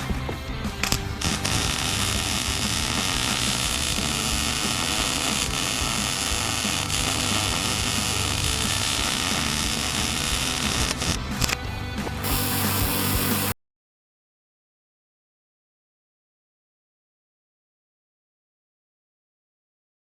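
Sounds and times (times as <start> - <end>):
welding arc crackling hiss: 0.8 - 11.4, 12.2 - 13.6.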